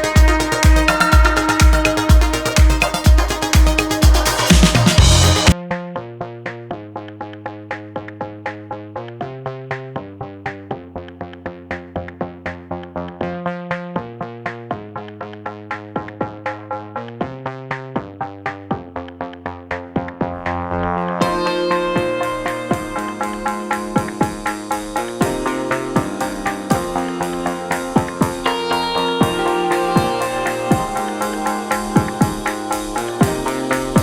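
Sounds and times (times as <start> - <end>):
electronic music with steady beat: 0.0 - 5.6, 20.0 - 34.0.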